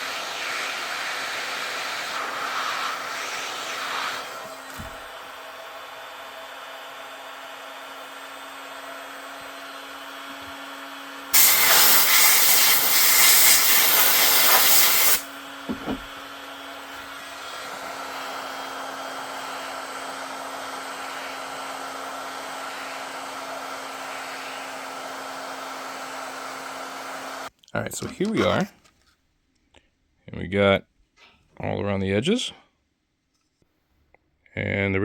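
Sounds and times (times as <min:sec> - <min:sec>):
heat gun blowing: 0:00.0 - 0:27.5.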